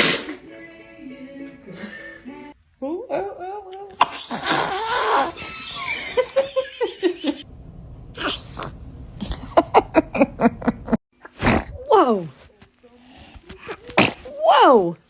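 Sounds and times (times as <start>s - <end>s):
loud sneeze: 0.0s - 0.5s, 3.9s - 5.6s, 8.2s - 9.9s, 13.9s - 14.5s
laughter in short bursts: 5.1s - 7.4s.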